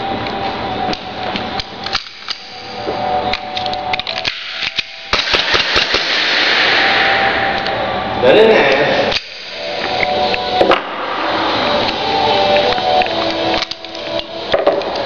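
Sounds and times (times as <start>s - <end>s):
pistol parts clicking and clacking: 0.9s - 2.6s, 3.3s - 6.4s.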